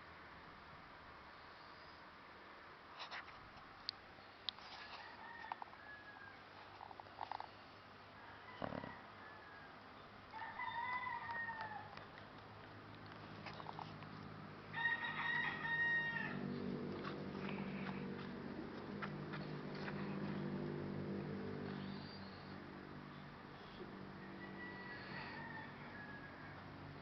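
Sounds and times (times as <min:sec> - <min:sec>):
rooster crowing: 0:04.8 - 0:06.5, 0:08.2 - 0:12.0, 0:14.7 - 0:16.6, 0:24.0 - 0:27.0
low droning hum: 0:12.6 - 0:24.6.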